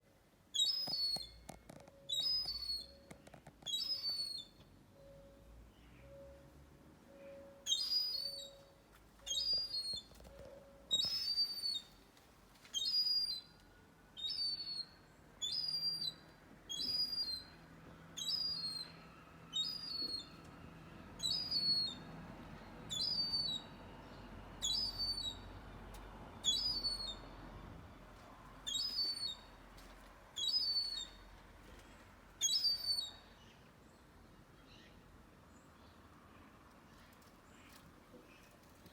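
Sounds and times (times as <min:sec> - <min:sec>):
bird calling: 0:00.6 - 0:04.6, 0:07.2 - 0:12.0, 0:26.4 - 0:27.3.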